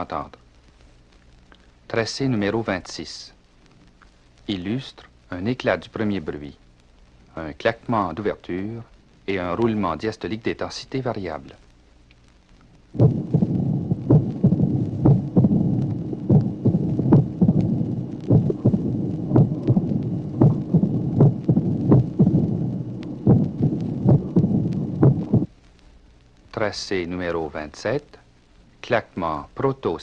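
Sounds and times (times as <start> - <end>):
low heart murmur rumble: 12.8 - 25.6
heart sound clicks: 12.9 - 25.5.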